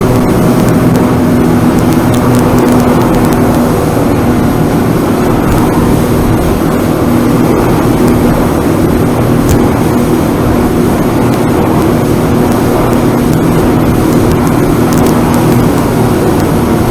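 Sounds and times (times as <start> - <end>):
boat engine drone: 0.0 - 16.9
water rushing: 0.0 - 16.9.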